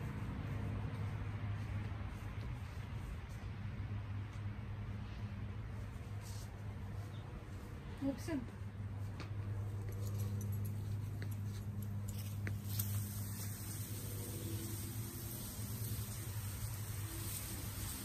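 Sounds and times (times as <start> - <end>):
light hiss: 11.2 - 18.0.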